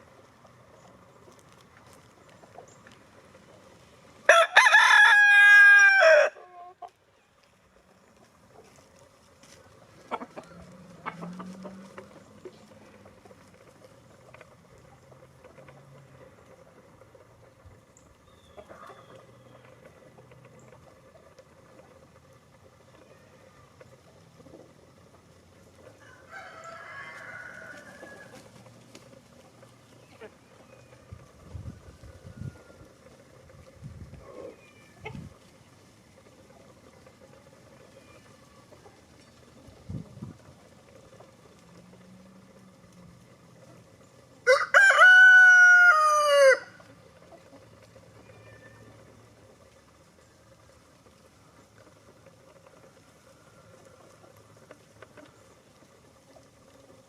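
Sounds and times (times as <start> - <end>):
chicken flock background: 0.0 - 57.0
rooster crowing: 4.3 - 6.6, 26.0 - 28.4, 44.4 - 46.8
faint hen clucking: 4.3 - 57.0.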